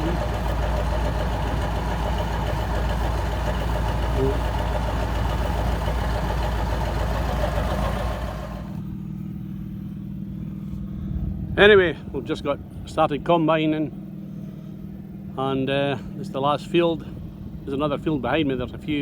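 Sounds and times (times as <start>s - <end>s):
tractor diesel engine running: 0.0s - 19.0s.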